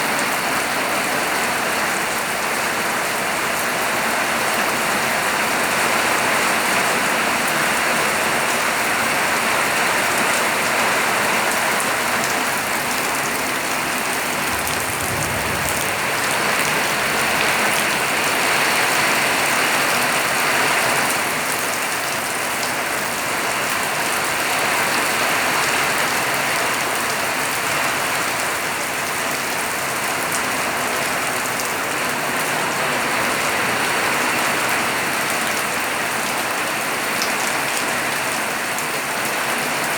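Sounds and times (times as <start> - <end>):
steady rain pattering: 0.0 - 39.9.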